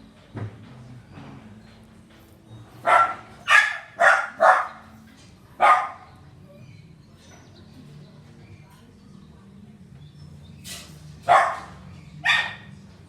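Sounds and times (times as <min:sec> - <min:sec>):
dog barking: 0:02.8 - 0:04.9, 0:05.6 - 0:06.2, 0:11.2 - 0:12.9.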